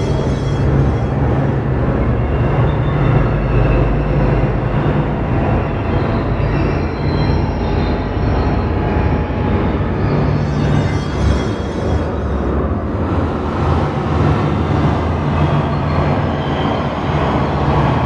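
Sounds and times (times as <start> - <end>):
dense rumbling noise: 0.0 - 6.0, 9.4 - 15.4
low hum: 0.0 - 15.8
faint high sustained tones: 10.2 - 12.9.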